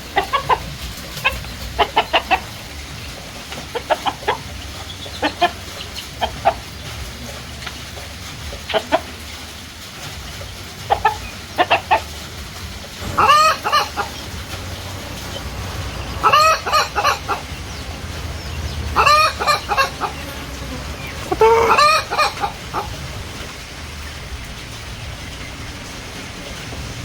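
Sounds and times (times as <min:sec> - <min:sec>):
chickens calling: 0:00.0 - 0:09.4, 0:10.3 - 0:26.4
low background rumble: 0:12.2 - 0:27.0.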